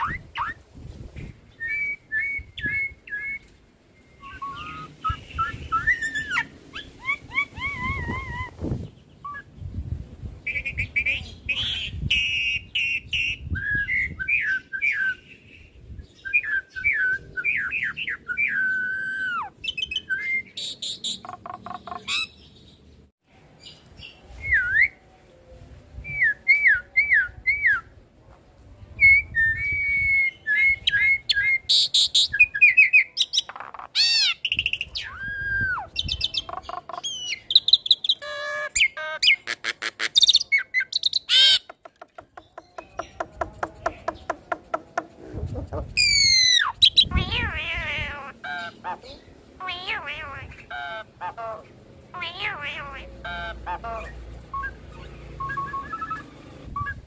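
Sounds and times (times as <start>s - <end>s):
starling singing whistled notes: 1.5s - 8.4s, 11.9s - 22.4s, 54.1s - 57.0s.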